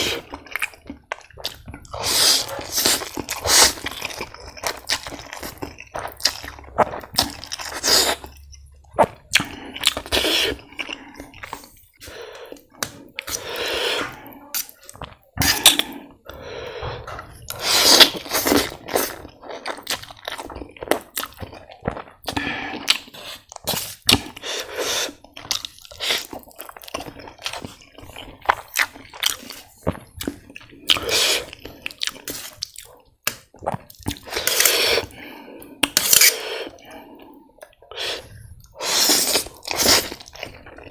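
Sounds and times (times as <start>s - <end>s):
wet chewing: 0.0s - 40.9s
noodle slurping: 1.5s - 5.6s, 9.4s - 14.4s, 17.5s - 19.9s, 22.3s - 25.3s, 30.8s - 32.7s, 34.1s - 37.3s, 37.9s - 40.9s.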